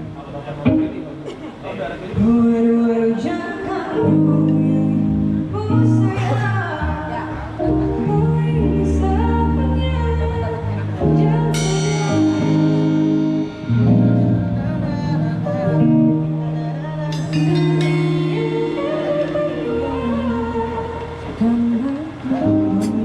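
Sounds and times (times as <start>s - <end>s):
live band playing held chords: 3.9s - 23.0s
cymbal crash: 11.5s - 15.8s, 17.1s - 21.2s.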